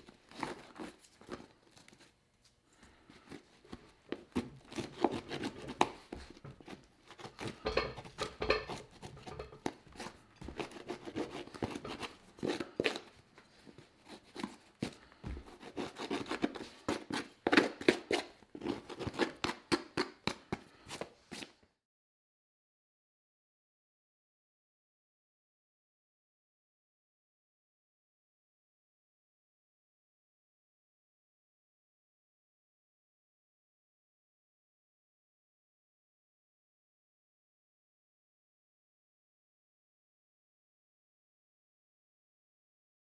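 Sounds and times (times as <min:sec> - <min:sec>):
cutting and scraping leather: 0:03.2 - 0:21.5.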